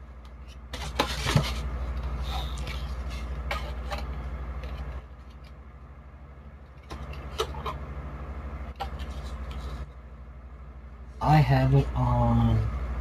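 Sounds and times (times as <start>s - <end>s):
steady low hum: 0.0s - 13.0s
light scrapes of small parts: 8.8s - 9.9s.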